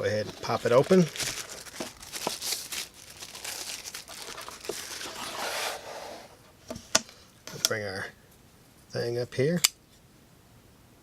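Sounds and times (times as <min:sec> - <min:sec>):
packaging crinkling and rustling: 0:00.0 - 0:05.8.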